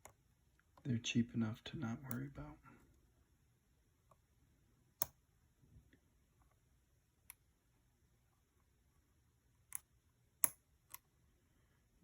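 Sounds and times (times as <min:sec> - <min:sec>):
lock pick clicking: 0:09.7 - 0:11.0.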